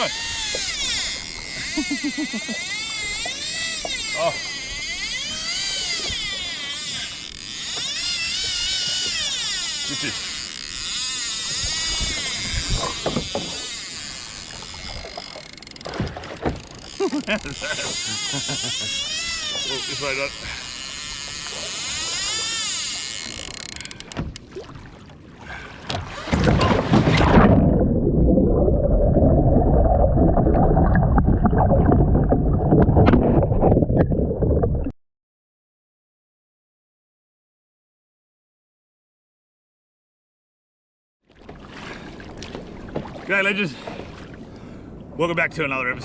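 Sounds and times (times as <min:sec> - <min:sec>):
water splashing around kayak: 0:00.0 - 0:34.9, 0:41.3 - 0:46.0.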